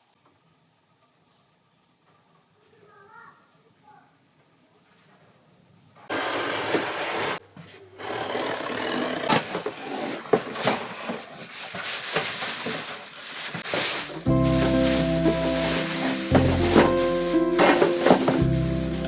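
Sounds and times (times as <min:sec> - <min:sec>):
scraping and rubbing: 0:09.4 - 0:19.0.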